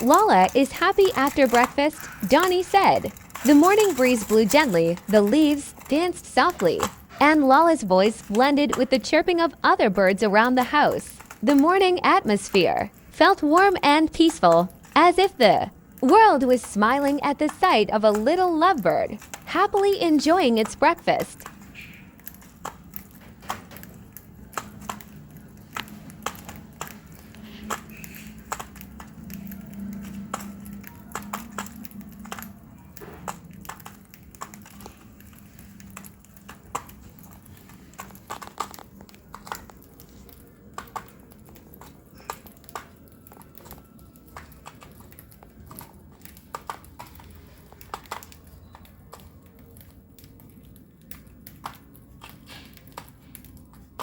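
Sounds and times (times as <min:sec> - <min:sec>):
bird cracking seeds: 0:00.0 - 0:07.6, 0:15.7 - 0:54.0.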